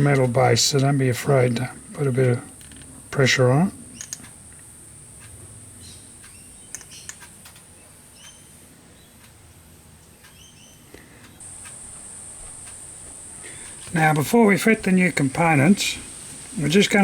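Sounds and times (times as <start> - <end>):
crickets chirring: 0.0 - 17.0
light clicks: 4.0 - 8.4, 10.1 - 14.0.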